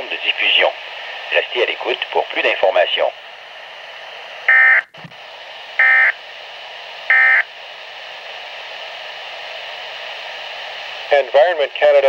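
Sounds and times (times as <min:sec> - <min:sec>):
radio hiss: 0:00.0 - 0:12.0.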